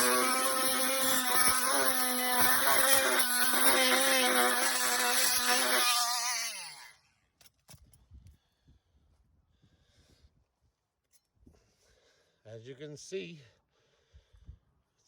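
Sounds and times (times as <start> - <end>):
oscillating multi-tool buzzing: 0.0 - 7.0.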